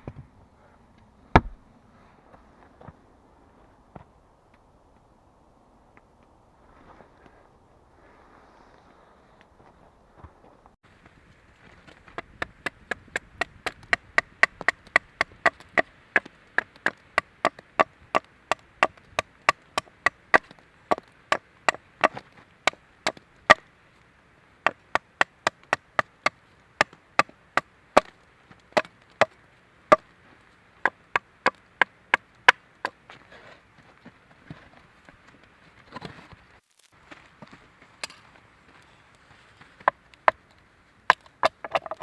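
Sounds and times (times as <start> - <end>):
hand tool striking wood: 1.3 - 1.6, 24.6 - 28.2, 28.8 - 30.1, 41.1 - 42.0.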